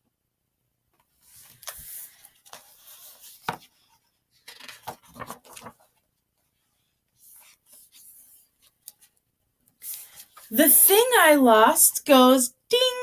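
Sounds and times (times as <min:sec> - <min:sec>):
book pages turning: 0:01.2 - 0:09.1
paper crackles: 0:04.4 - 0:06.1.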